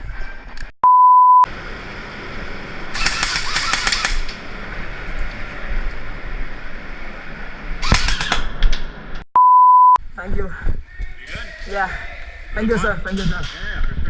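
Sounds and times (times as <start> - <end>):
censor bleep: 0.8 - 1.5, 9.4 - 10.0
outdoor background noise: 1.5 - 9.2, 10.0 - 14.0.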